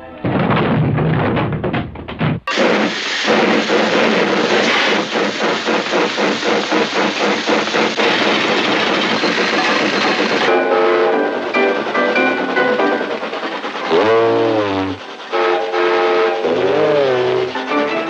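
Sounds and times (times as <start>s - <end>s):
music: 0.0s - 1.9s, 10.5s - 18.0s
engine chugging: 2.4s - 18.0s.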